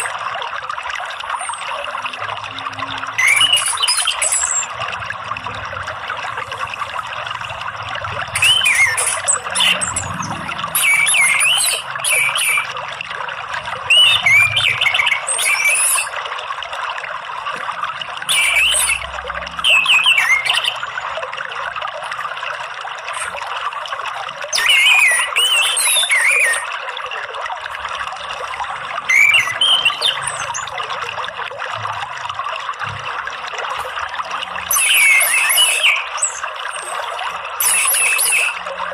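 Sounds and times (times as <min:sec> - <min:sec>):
running water trickling: 0:00.0 - 0:38.9
thrush singing whistled notes: 0:02.8 - 0:04.8, 0:08.2 - 0:12.8, 0:13.8 - 0:16.2, 0:18.2 - 0:21.2, 0:24.5 - 0:26.8, 0:29.0 - 0:31.0, 0:34.6 - 0:38.9.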